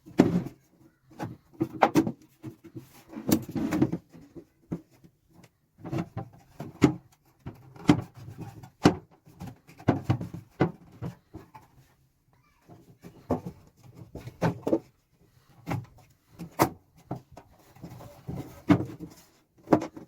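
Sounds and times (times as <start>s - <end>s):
metal toolbox knocks and clunks: 1.2s - 2.6s, 15.6s - 20.0s.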